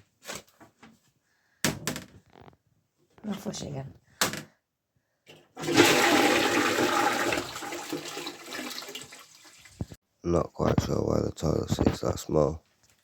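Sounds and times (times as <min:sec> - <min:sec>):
toilet flushing: 0:05.6 - 0:10.0.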